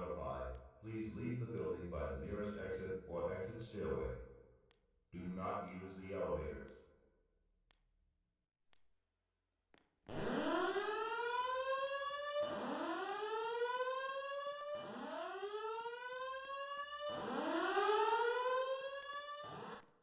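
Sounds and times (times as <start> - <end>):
fire alarm whoop tone: 10.1 - 19.9.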